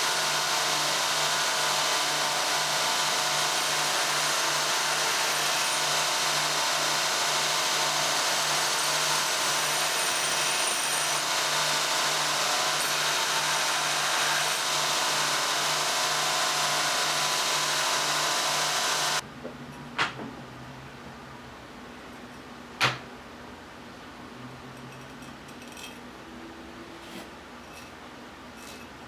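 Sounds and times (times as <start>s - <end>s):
power tool running: 0.0s - 19.2s.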